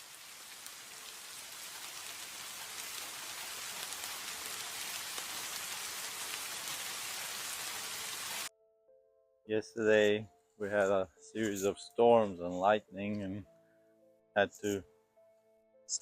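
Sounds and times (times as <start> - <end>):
steady rain falling: 0.0 - 8.5.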